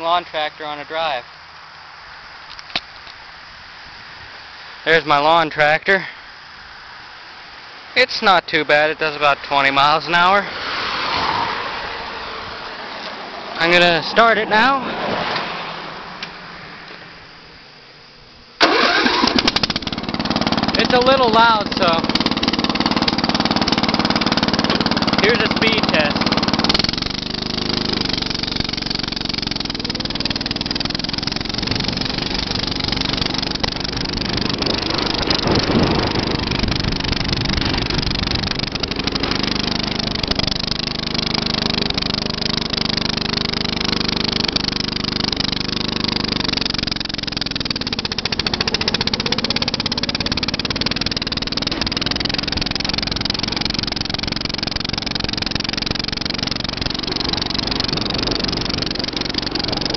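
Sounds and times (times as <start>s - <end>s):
lawn tractor engine running: 18.6s - 59.9s.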